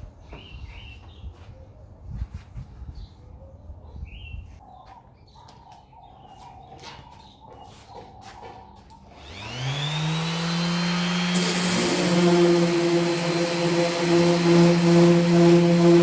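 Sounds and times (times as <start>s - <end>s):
electric motor whine and hum: 9.1s - 16.0s.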